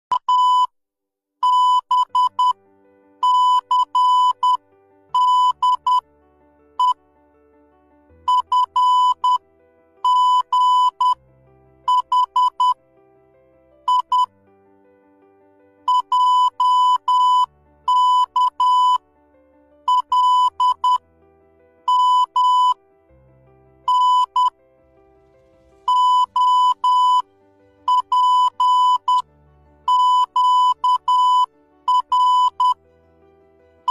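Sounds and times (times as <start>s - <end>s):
morse code beeping: 1.4s - 2.6s, 3.2s - 6.0s, 6.8s - 7.0s, 8.3s - 9.4s, 10.0s - 11.2s, 11.9s - 12.8s, 13.9s - 14.3s, 15.9s - 19.0s, 19.9s - 21.0s, 21.9s - 22.8s, 23.9s - 24.6s, 25.9s - 27.2s, 27.9s - 29.3s, 29.9s - 32.8s
soft background music: 1.5s - 33.9s.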